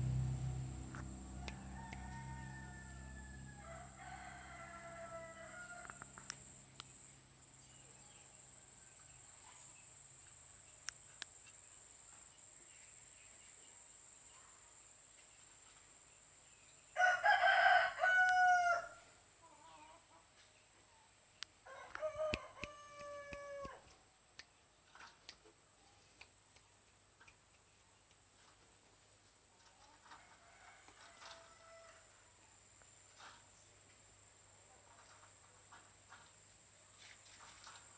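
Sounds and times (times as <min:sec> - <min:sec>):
rooster crowing: 0:00.1 - 0:06.2, 0:17.0 - 0:19.1, 0:21.6 - 0:23.9, 0:30.3 - 0:32.1.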